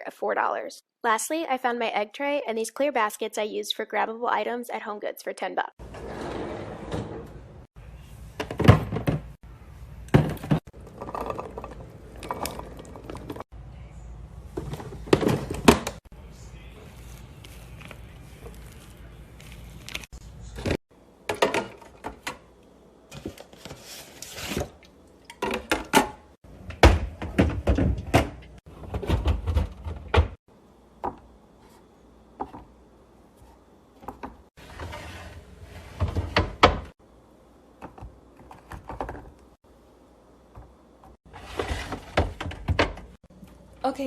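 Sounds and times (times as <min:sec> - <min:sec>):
fridge drawers opening and closing: 0:05.8 - 0:07.7, 0:08.4 - 0:09.4, 0:10.1 - 0:13.4, 0:14.5 - 0:16.0, 0:23.1 - 0:30.4, 0:34.6 - 0:37.0, 0:41.2 - 0:43.2
plastic containers knocking and clattering: 0:08.4 - 0:09.4, 0:10.1 - 0:13.4, 0:14.5 - 0:16.0.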